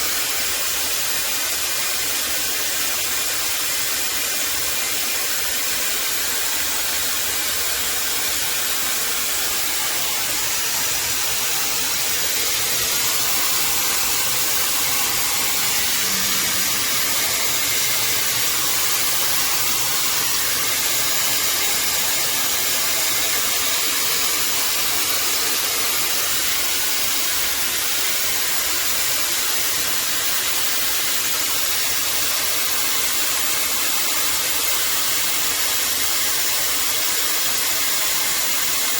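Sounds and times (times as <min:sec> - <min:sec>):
hair dryer running: 0:06.7 - 0:26.4.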